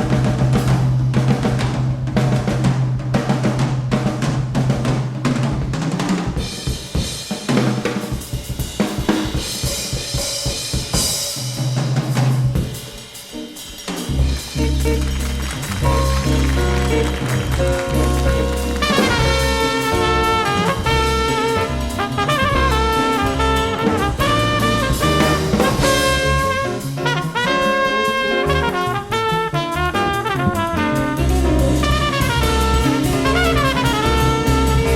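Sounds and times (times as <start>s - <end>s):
bass: 0.0s - 34.9s
drum kit playing: 0.0s - 34.9s
live jazz band: 0.0s - 34.9s
piano: 0.0s - 34.9s
trumpet melody: 13.3s - 34.9s.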